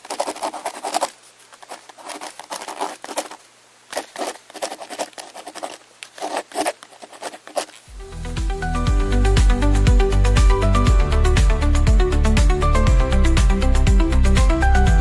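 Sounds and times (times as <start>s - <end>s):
scratching and crackling: 0.0s - 8.0s.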